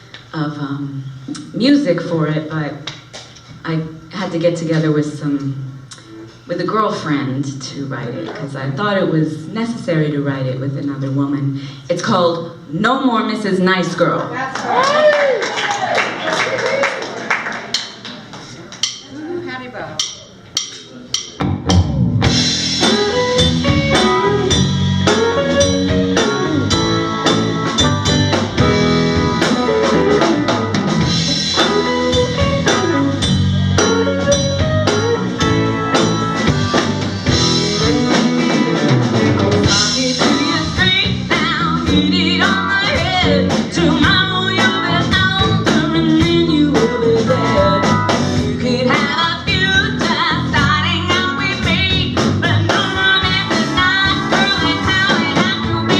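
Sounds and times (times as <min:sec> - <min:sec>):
live blues band playing: 0:00.0 - 0:14.3, 0:19.9 - 0:55.9
drum kit: 0:17.7 - 0:19.1, 0:19.9 - 0:55.9
guitar playing: 0:20.3 - 0:55.9.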